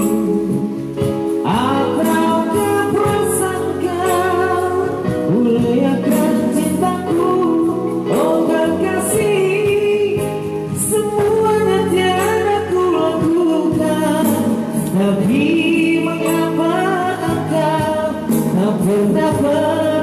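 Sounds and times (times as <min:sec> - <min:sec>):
instrumental backing: 0:00.0 - 0:20.0.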